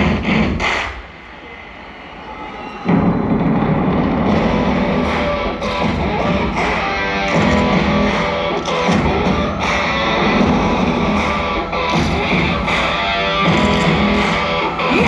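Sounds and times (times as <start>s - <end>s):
rock music with electric guitar: 3.8s - 15.0s.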